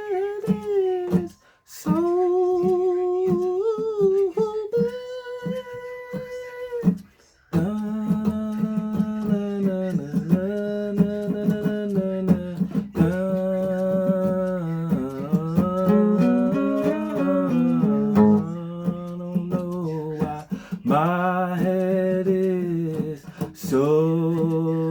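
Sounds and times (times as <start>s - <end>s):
woman humming a slow tune: 15.0s - 18.7s.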